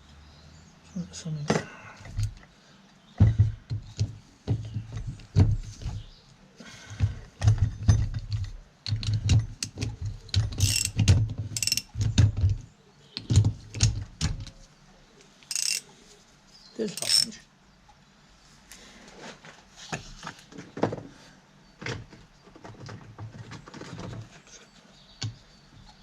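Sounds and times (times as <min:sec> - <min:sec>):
metal clicks and knocks: 0:07.0 - 0:14.6, 0:15.5 - 0:15.8.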